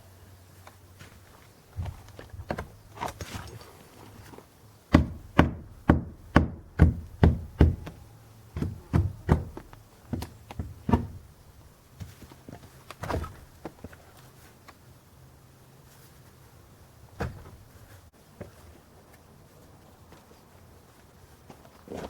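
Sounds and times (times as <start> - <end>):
hammer blows on wood: 4.9 - 8.0.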